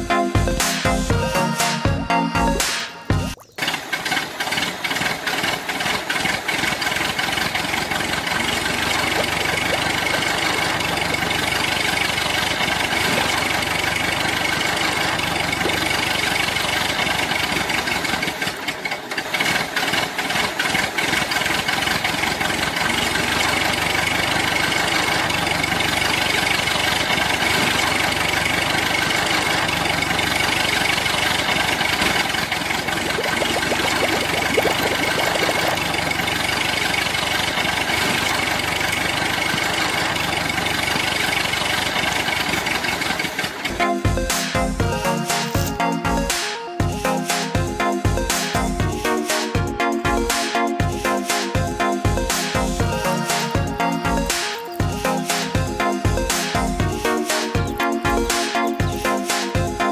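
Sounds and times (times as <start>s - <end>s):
engine running: 0.0s - 59.9s.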